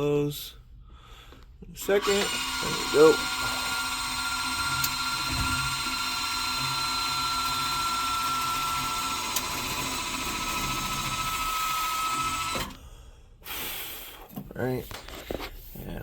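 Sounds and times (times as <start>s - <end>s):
machinery whine: 1.9s - 12.8s.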